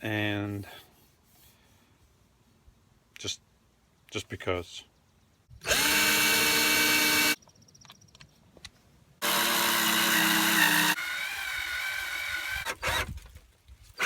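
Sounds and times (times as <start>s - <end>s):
electric drill motor whine: 5.6s - 7.4s, 9.2s - 13.2s.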